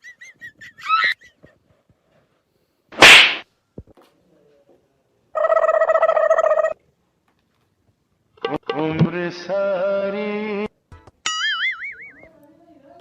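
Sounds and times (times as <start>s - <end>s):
sharp whip-like swish: 3.0s - 3.4s.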